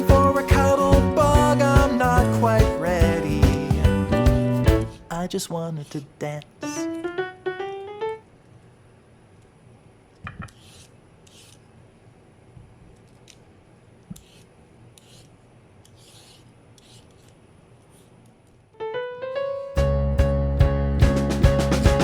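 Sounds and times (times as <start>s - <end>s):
piano background music: 0.0s - 5.1s, 6.8s - 8.3s, 18.8s - 22.0s
soft short scraping strokes: 14.2s - 17.3s.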